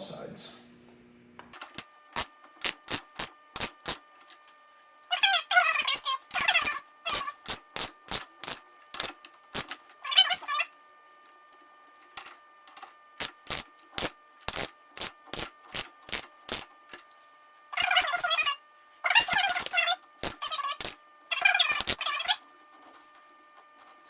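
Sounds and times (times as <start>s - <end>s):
wrench clicking: 13.2s - 16.7s, 19.2s - 22.1s.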